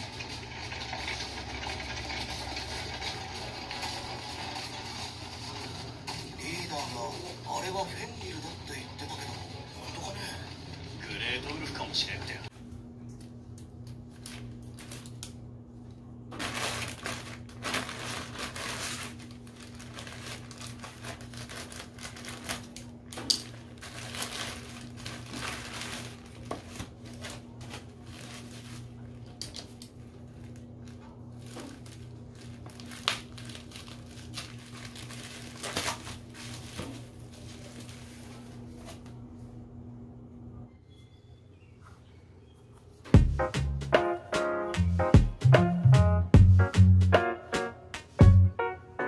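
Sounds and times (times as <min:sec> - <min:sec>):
packaging rustling and crinkling: 0:13.9 - 0:15.4, 0:16.3 - 0:39.1.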